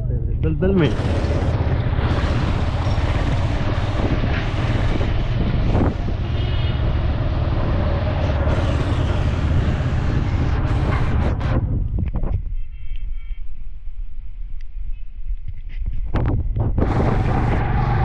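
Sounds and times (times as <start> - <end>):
motorcycle engine running: 0.6 - 11.6.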